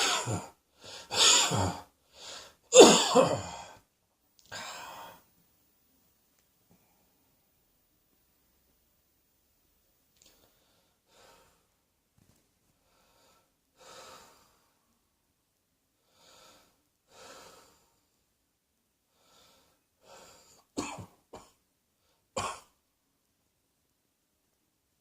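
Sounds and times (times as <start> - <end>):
person coughing: 0.0 - 1.9, 2.7 - 3.8, 20.8 - 21.6, 22.4 - 22.8
person breathing: 0.7 - 2.7, 4.5 - 5.4, 10.2 - 11.8, 12.8 - 14.9, 16.0 - 18.1, 19.1 - 20.7.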